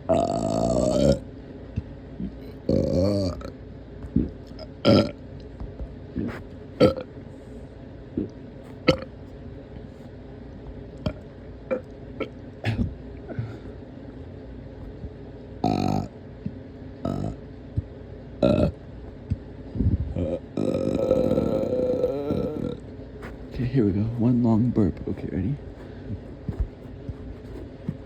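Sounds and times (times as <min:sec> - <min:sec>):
person burping: 0:00.0 - 0:01.2, 0:02.2 - 0:03.5, 0:04.1 - 0:05.2, 0:06.2 - 0:07.0, 0:08.9 - 0:09.1, 0:15.6 - 0:16.1, 0:20.2 - 0:22.8.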